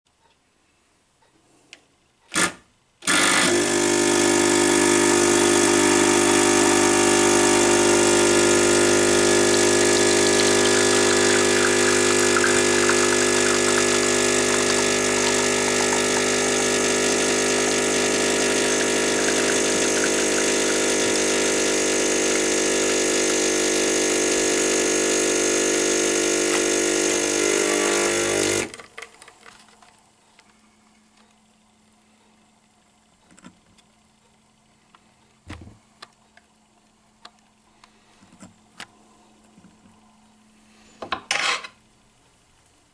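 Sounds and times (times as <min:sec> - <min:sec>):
espresso machine pump humming: 0:03.1 - 0:28.9.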